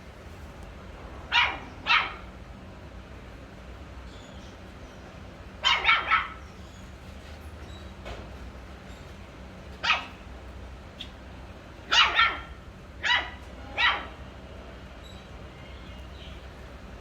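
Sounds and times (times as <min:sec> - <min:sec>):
low steady background hum: 0:00.0 - 0:17.0
dog barking: 0:01.3 - 0:02.3, 0:05.6 - 0:06.4, 0:09.8 - 0:10.2, 0:11.8 - 0:14.2.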